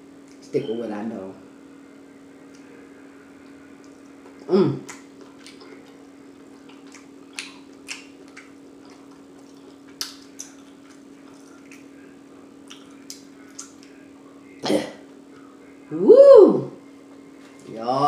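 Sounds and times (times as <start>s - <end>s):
faint steady hum: 0.0s - 18.0s
wet mouth smacks chewing: 3.8s - 11.9s, 12.6s - 14.0s.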